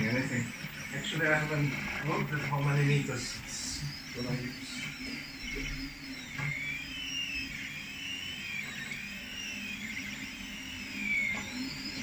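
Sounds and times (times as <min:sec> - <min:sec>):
fans humming: 0:00.0 - 0:12.0
stepper motors whining: 0:00.0 - 0:12.0.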